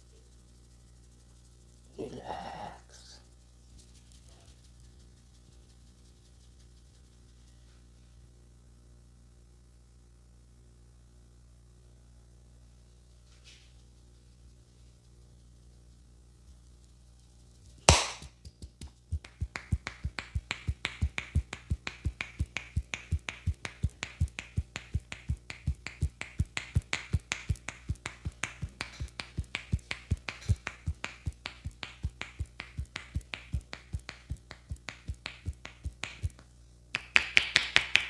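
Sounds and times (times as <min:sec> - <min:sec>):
loud sharp smack: 0:17.9 - 0:18.3
hands tapping on head: 0:17.9 - 0:36.4, 0:37.0 - 0:38.0.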